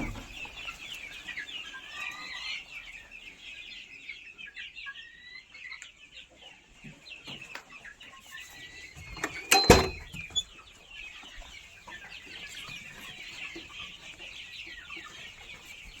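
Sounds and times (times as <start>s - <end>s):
chickens clucking: 0.0s - 16.0s.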